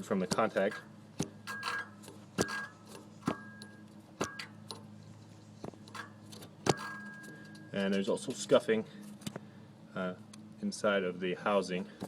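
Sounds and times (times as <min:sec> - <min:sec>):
turbo blades clicking on housing: 0:00.0 - 0:08.4
faint steady hum: 0:00.0 - 0:12.0.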